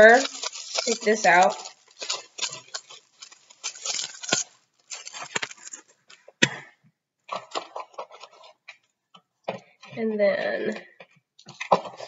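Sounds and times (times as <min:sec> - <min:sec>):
packaging rustling and crinkling: 0:00.0 - 0:06.3, 0:07.3 - 0:08.9, 0:11.0 - 0:12.0.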